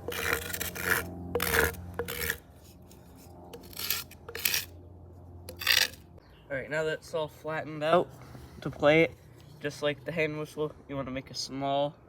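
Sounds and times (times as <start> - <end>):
plant stalk scraping on rock: 0.0 - 4.7, 5.5 - 6.0.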